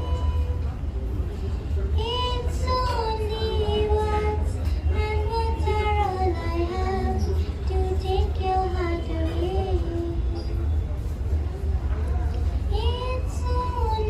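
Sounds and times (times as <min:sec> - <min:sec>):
girl singing unaccompanied: 0:00.0 - 0:00.6, 0:02.0 - 0:10.4, 0:12.7 - 0:14.0.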